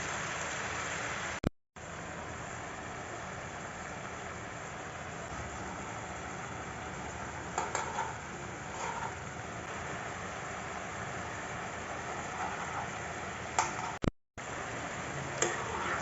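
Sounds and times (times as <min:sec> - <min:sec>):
food sizzling in a pan: 0:00.0 - 0:16.0.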